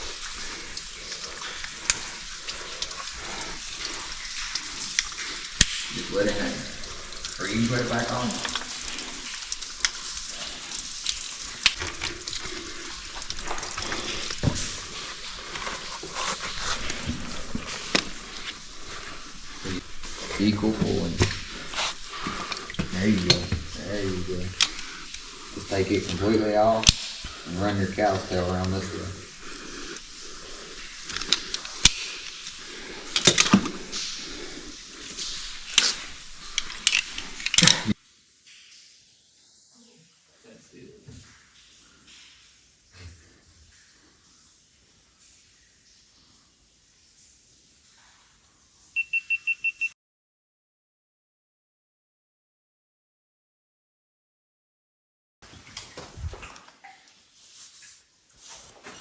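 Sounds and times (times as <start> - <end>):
waterfall splashing: 0.0 - 38.8.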